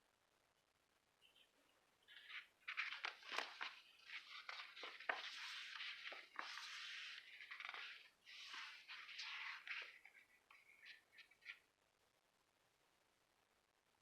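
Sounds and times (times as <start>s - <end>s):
paper and stickers handled: 2.1s - 11.6s.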